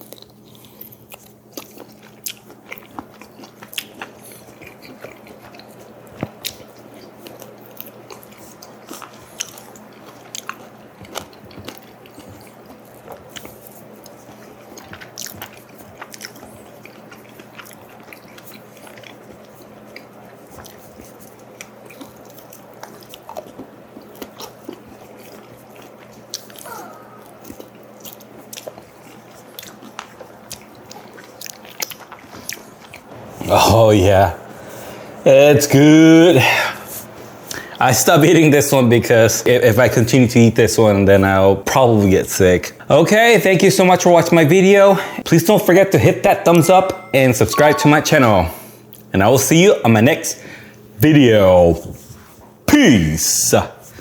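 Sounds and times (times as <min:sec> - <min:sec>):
chewing and biting: 0:00.0 - 0:33.1.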